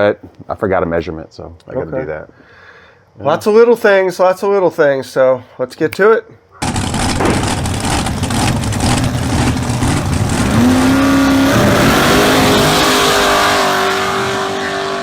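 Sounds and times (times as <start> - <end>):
engine revving: 6.8 - 15.0.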